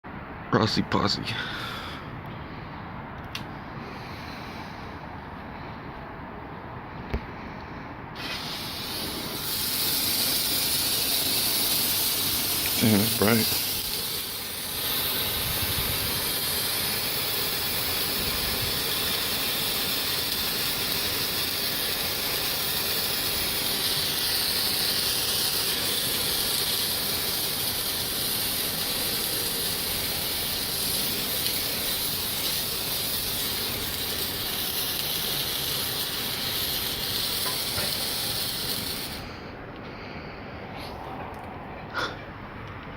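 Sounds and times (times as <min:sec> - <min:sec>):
firework hissing: 0:08.1 - 0:39.6.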